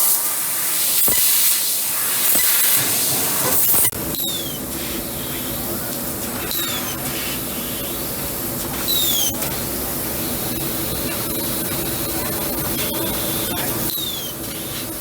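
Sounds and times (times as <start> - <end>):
assist gas hissing: 0.0 - 3.9.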